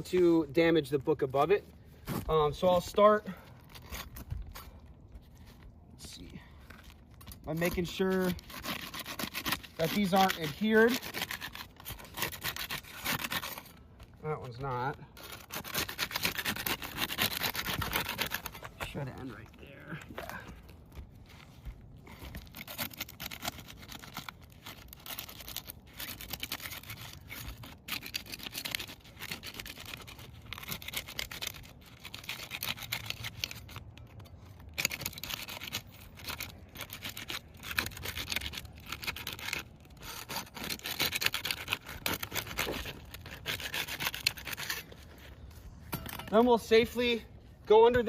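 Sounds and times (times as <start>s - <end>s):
gritty scraping of shingles: 0.0s - 48.0s.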